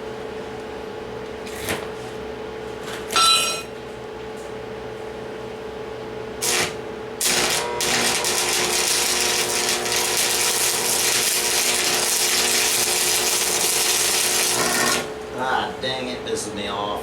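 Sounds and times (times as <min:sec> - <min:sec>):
power tool cutting steel: 0:06.4 - 0:15.2.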